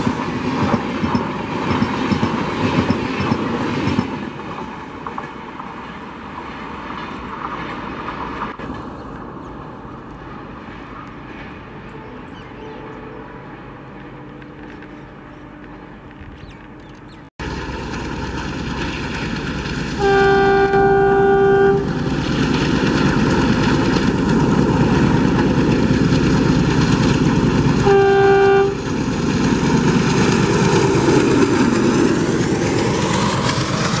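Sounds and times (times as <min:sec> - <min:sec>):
train running: 0:00.0 - 0:34.0
train horn blasts: 0:11.9 - 0:15.8, 0:20.0 - 0:22.0, 0:27.7 - 0:28.9.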